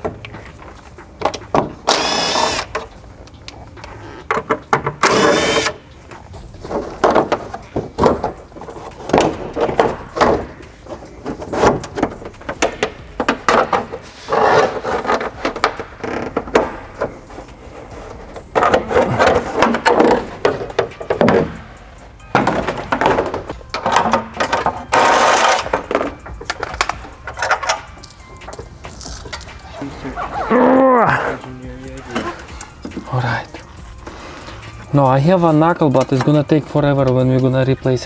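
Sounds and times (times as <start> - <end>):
tools and metal parts clanking: 0.0 - 30.5, 31.1 - 38.0
power tool bursts: 1.8 - 2.7, 5.0 - 5.8.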